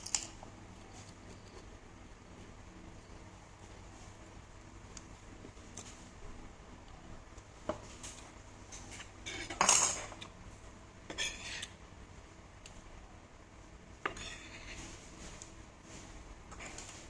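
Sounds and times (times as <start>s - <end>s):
utensils clattering against dishes: 8.8s - 10.2s.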